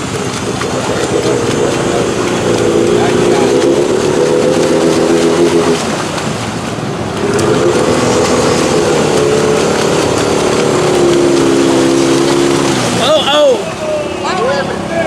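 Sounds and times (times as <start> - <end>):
engine revving under load: 0.0 - 13.8.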